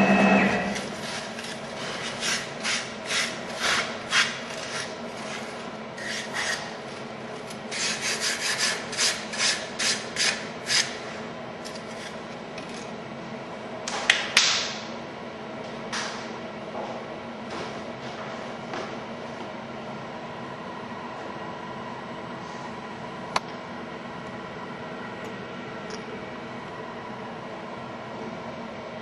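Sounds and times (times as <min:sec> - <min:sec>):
machine hum: 0:00.0 - 0:08.7.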